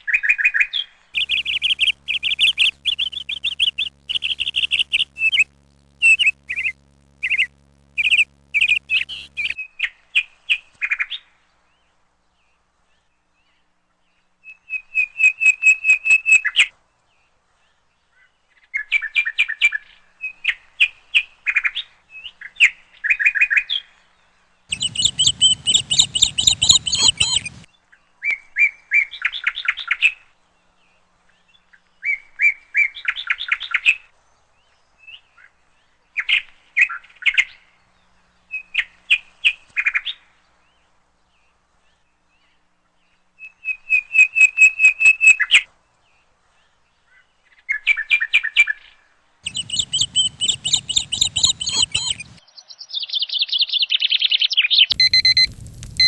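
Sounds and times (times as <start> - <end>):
low steady hum: 1.2 - 9.6, 24.7 - 27.7, 49.5 - 52.4, 54.9 - 56.0
small bird chirping: 1.2 - 9.6, 24.7 - 27.7, 49.5 - 56.0.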